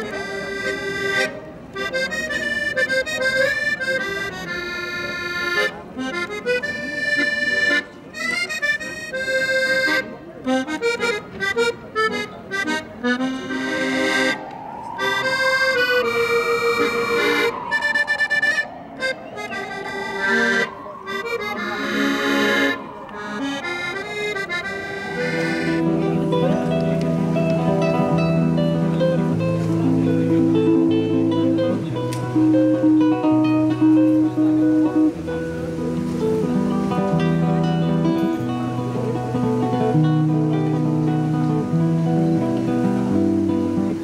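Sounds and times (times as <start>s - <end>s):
accordion playing lively tune: 0.0s - 44.0s
low held notes: 0.0s - 44.0s
sliding tone rising and falling: 14.0s - 21.5s.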